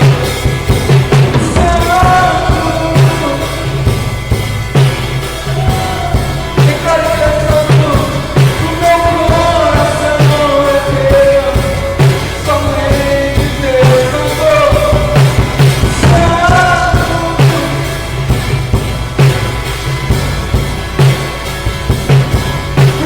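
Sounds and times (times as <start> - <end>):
acoustic guitar: 0.0 - 23.0
drum kit beat: 0.0 - 23.0
man singing: 1.1 - 4.4, 5.4 - 18.6, 22.8 - 23.0.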